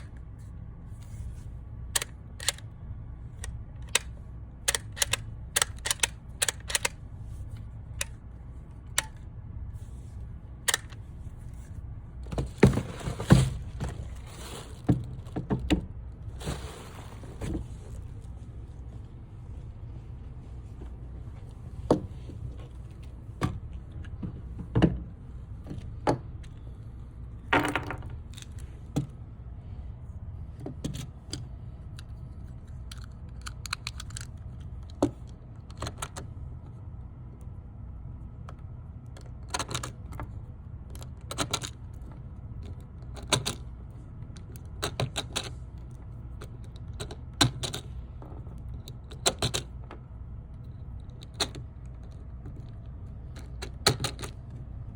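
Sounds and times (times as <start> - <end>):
steady low rumble: 0.0 - 44.8
sharp clicks: 4.7 - 7.0.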